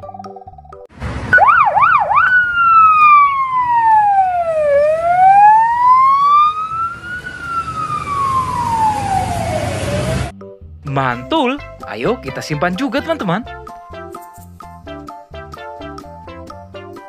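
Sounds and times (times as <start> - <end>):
police siren yelping and wailing: 1.3 - 10.3.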